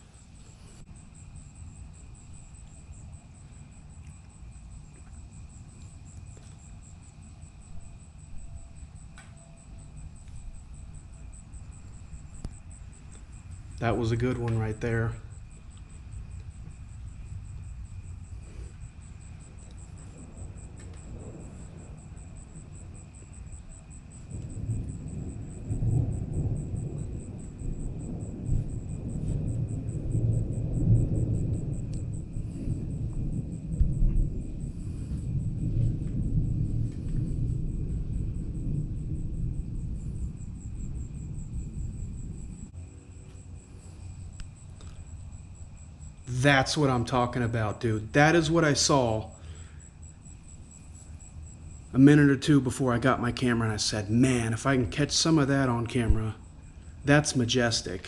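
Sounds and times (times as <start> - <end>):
high pulsing insect chirp: 0.0 - 58.0
low insect trill: 0.0 - 58.0
low rumble: 10.2 - 52.2.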